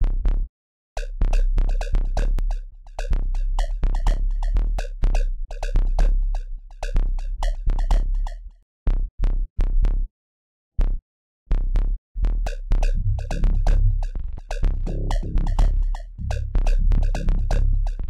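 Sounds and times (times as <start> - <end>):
electronic music with drum-machine beat: 1.3 - 8.3, 12.6 - 18.0.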